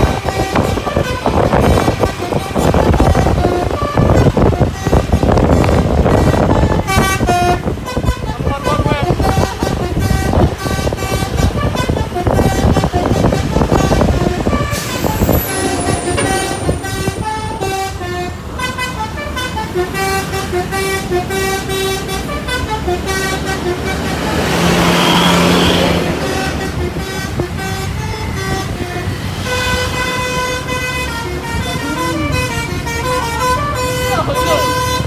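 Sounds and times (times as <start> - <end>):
bus horn playing a melody: 0.0 - 35.0
loud rushing noise: 13.1 - 17.8
low rumble: 14.2 - 17.7.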